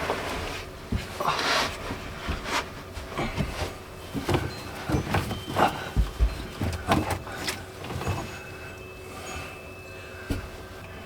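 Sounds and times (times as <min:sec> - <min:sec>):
knocks and clatter from handling: 0:03.3 - 0:08.4.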